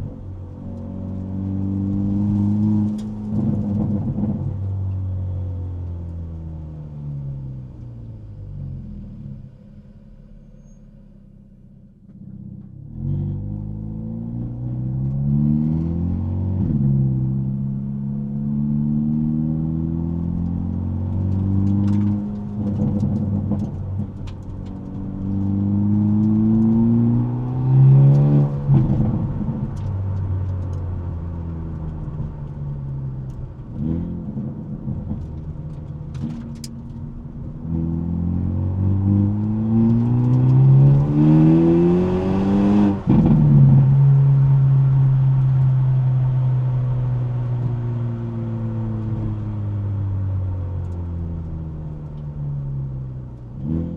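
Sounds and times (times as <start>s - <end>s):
car engine accelerating hard: 12.0s - 53.9s.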